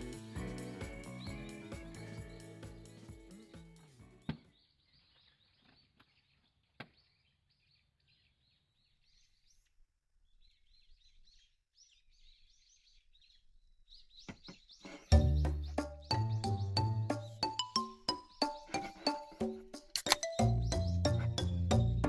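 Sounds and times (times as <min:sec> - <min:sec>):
small birds chirping: 0:00.0 - 0:22.0
sharp clicks: 0:20.0 - 0:20.4.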